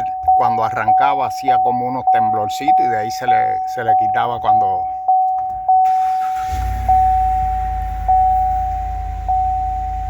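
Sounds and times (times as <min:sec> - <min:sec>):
car warning chime dinging: 0:00.0 - 0:10.0
car engine starting and idling: 0:05.7 - 0:10.0.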